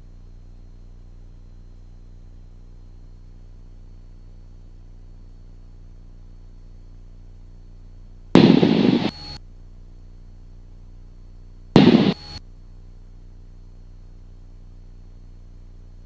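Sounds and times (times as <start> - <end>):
radio static bursts: 8.4 - 9.4, 11.8 - 12.4.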